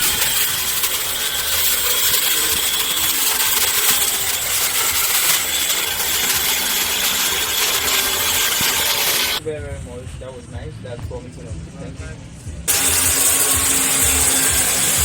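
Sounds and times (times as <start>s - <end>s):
electric power tool on wood: 0.0s - 9.4s, 12.7s - 15.0s.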